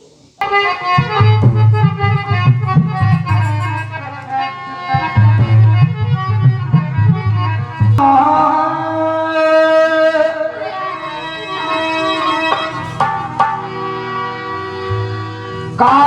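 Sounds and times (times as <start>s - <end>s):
sharp drum strokes: 0.4s - 8.0s, 12.4s - 16.0s
devotional instrumental melody: 0.4s - 16.0s.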